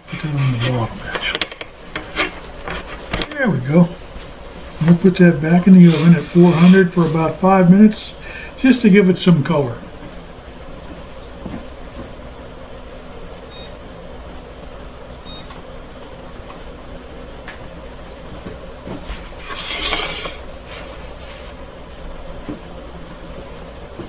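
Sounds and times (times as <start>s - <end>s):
kitchen hum: 0.0s - 24.0s
oven electronic beeps: 13.5s - 13.8s, 15.1s - 15.6s.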